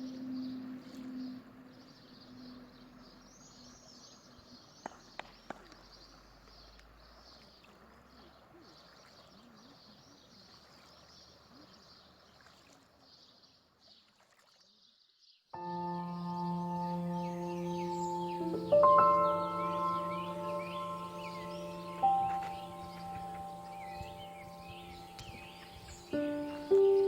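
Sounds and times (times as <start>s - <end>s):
faint birdsong chirps: 0.0s - 14.1s, 14.7s - 27.0s.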